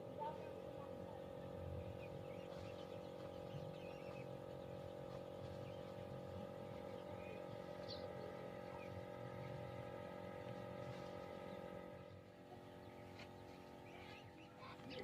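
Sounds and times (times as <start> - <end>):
birds chirping: 0.0 - 15.0
small motor humming: 0.0 - 15.0.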